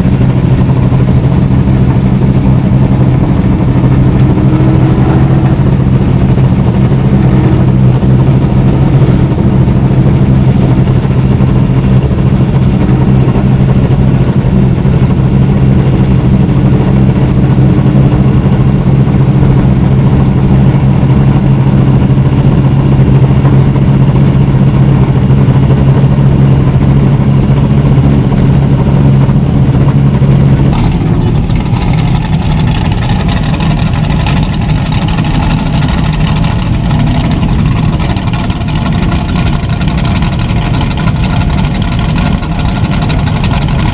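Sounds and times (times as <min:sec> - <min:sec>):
racing car engines running: 0:00.0 - 0:43.9.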